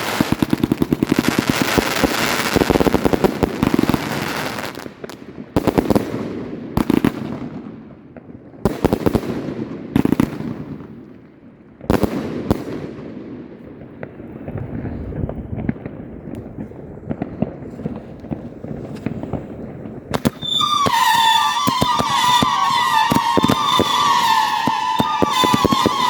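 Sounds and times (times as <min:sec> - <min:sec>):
firework crackling: 0:00.0 - 0:07.4, 0:13.9 - 0:26.0
firework bangs echoing: 0:00.0 - 0:11.0, 0:11.8 - 0:26.0.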